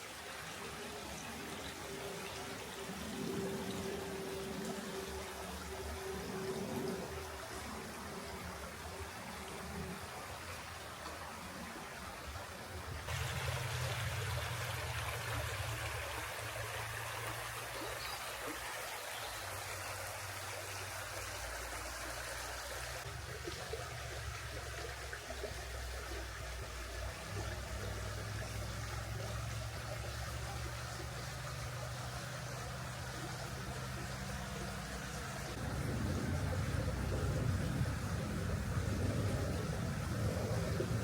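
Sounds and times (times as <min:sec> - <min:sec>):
river water rushing: 0:00.0 - 0:41.0
low rumble: 0:35.5 - 0:41.0.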